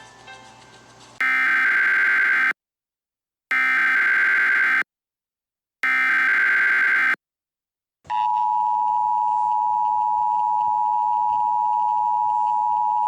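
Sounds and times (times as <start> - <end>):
harsh digital data tones: 5.8 - 7.2.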